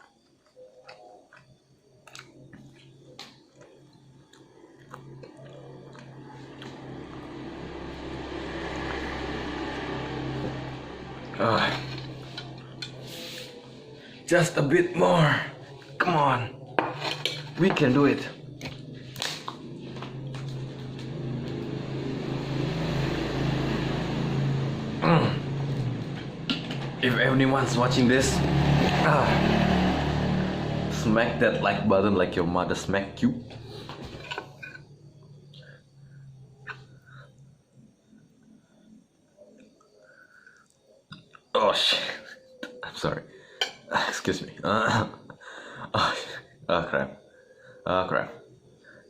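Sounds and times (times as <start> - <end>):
person chewing noodles: 0.0 - 9.8
vehicle engine running: 6.3 - 12.9, 17.8 - 33.9.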